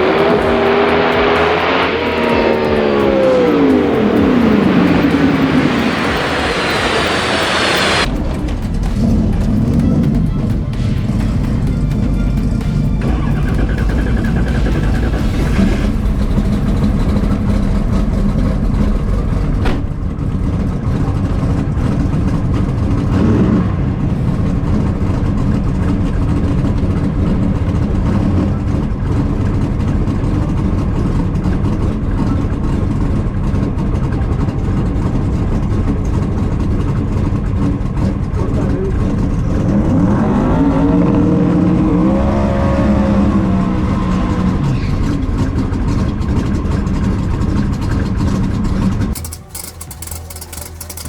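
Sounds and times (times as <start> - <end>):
car engine running: 0.0 - 51.0.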